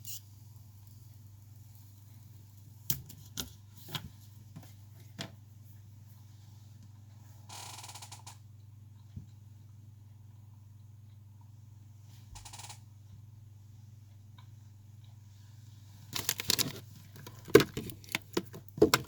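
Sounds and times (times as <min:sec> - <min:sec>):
small tools clicking on phone: 0:07.5 - 0:08.4, 0:12.4 - 0:12.8.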